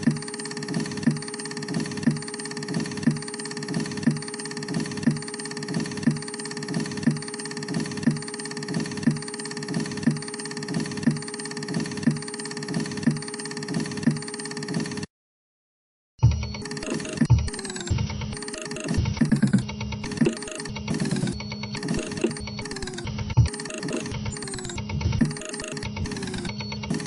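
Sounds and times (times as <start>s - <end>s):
regular mechanical knock: 16.2s - 27.0s
disc printer humming: 16.4s - 27.0s.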